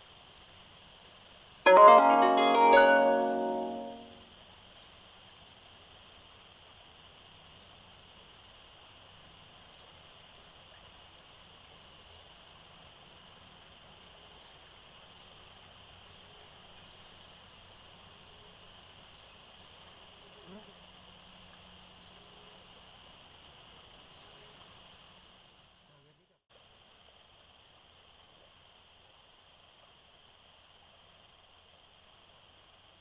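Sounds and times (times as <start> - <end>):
music jingle: 1.7 - 4.2.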